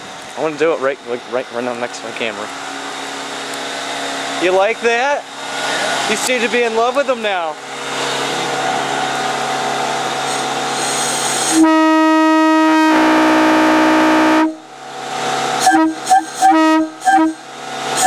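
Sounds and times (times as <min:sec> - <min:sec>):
rush of compressed air: 0:08.0 - 0:11.6
locomotive air horn: 0:10.9 - 0:14.7, 0:15.6 - 0:17.4.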